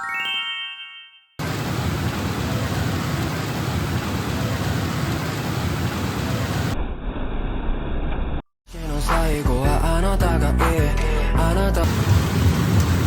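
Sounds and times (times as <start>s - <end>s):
rising chime tones: 0.0s - 1.4s
loud steady rushing noise: 1.4s - 6.8s, 11.8s - 13.0s.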